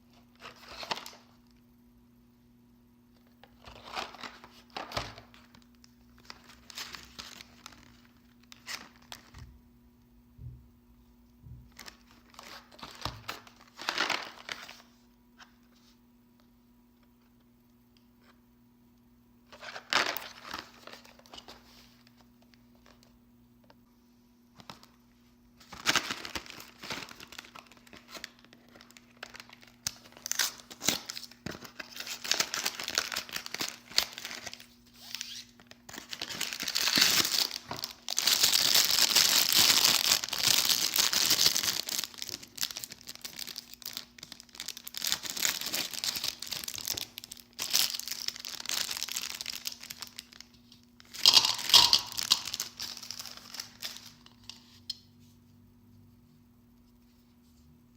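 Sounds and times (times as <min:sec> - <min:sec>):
candy wrapper crinkling and tearing: 0:03.6 - 0:09.4, 0:11.7 - 0:14.8, 0:25.6 - 0:54.6.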